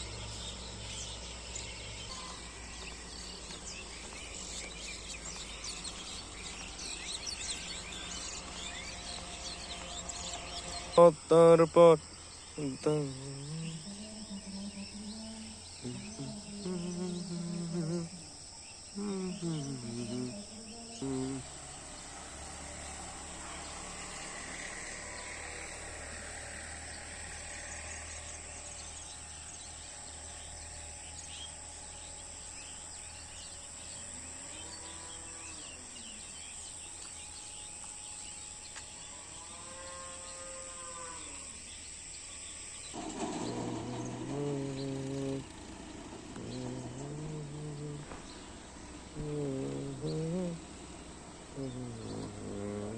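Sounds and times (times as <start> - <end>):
drawn-out rising falling calls: 0.0 - 52.9
high insect drone: 0.0 - 52.9
small birds chirping: 0.0 - 52.9
voice: 10.9 - 12.0, 12.6 - 15.1, 15.8 - 18.2, 19.0 - 21.6, 43.4 - 45.5, 46.4 - 48.2, 49.2 - 50.6, 51.6 - 52.9.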